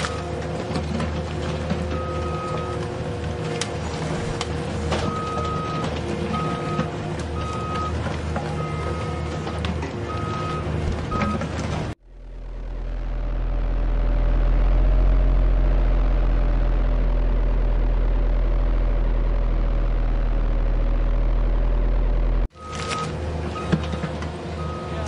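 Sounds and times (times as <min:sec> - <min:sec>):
low engine drone: 0:00.0 - 0:25.0
machine reversing beep: 0:01.9 - 0:02.8, 0:05.0 - 0:09.4, 0:10.1 - 0:11.5, 0:24.6 - 0:25.0.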